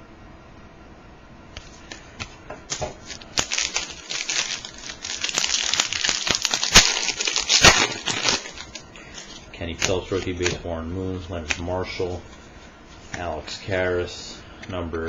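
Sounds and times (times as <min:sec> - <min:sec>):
foil pack tearing and crinkling: 0:02.7 - 0:10.5.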